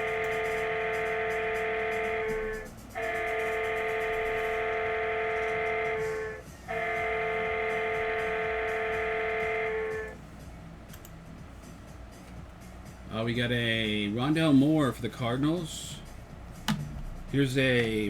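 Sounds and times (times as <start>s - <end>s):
sustained music chord: 0.0s - 10.6s.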